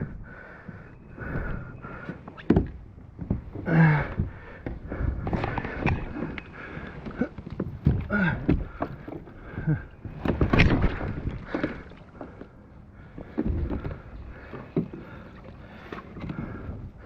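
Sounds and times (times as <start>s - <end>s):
water splashing: 5.4s - 12.6s.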